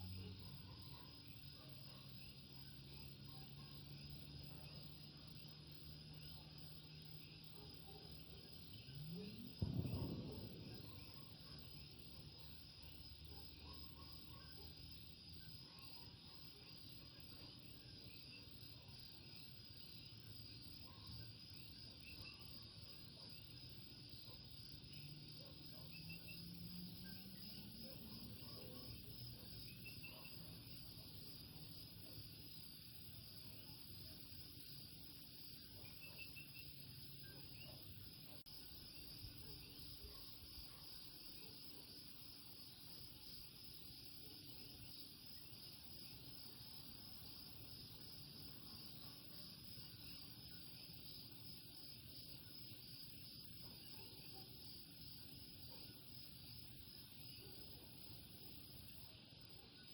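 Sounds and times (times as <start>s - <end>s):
insects trilling: 0.0s - 13.3s.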